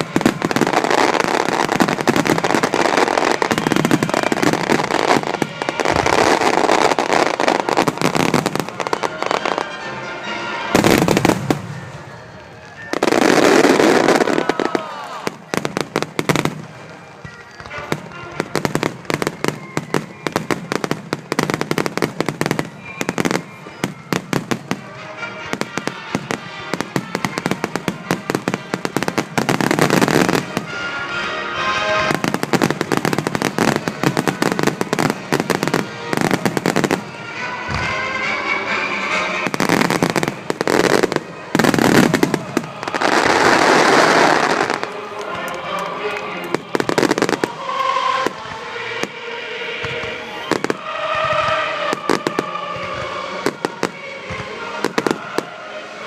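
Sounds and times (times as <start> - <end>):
fireworks bangs and crackles: 0.0 - 9.9, 10.5 - 56.0.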